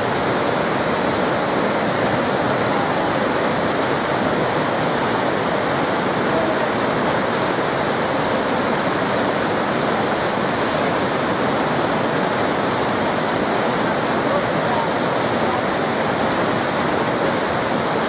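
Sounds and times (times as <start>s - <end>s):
waterfall pouring: 0.0s - 18.0s.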